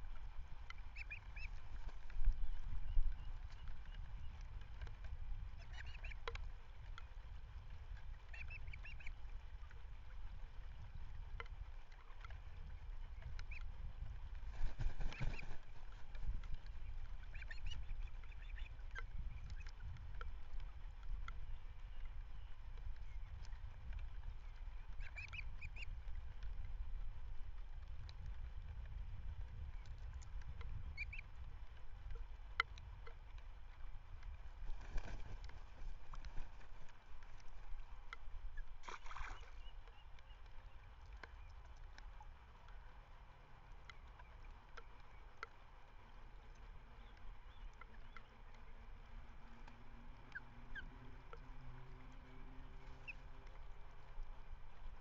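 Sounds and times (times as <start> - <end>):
faint bird chirps: 0.7 - 1.6, 5.6 - 6.2, 14.7 - 20.0.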